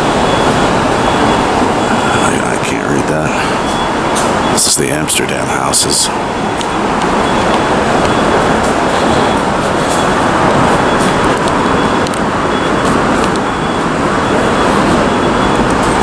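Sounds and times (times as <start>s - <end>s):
city street traffic roar: 0.0s - 16.0s.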